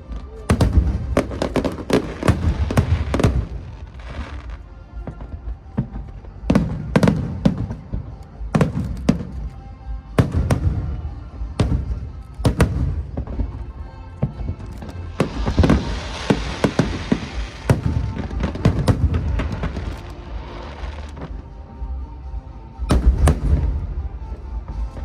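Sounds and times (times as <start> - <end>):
music playing: 0.0 - 25.0
fireworks bangs: 0.2 - 9.5, 10.2 - 21.4, 22.9 - 24.0.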